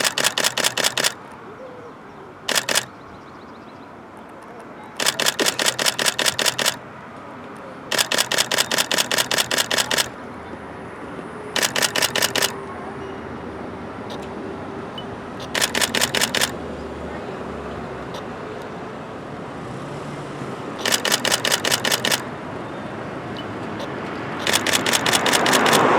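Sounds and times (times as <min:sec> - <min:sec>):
camera shutter clicks: 0:00.0 - 0:01.2, 0:02.5 - 0:02.9, 0:05.0 - 0:06.8, 0:07.9 - 0:10.2, 0:11.6 - 0:12.6, 0:15.4 - 0:16.6, 0:20.8 - 0:22.3, 0:23.8 - 0:25.9.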